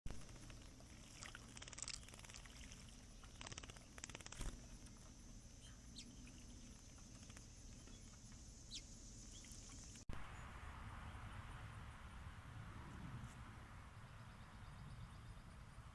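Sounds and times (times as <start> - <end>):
faint bird chirps: 1.5 - 10.0.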